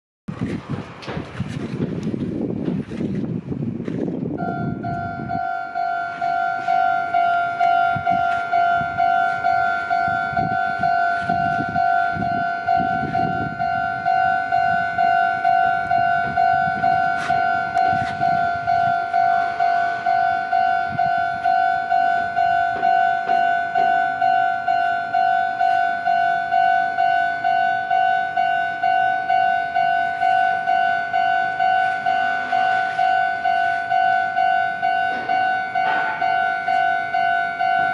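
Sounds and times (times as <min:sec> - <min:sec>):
level crossing warning bell: 0:04.4 - 0:37.9.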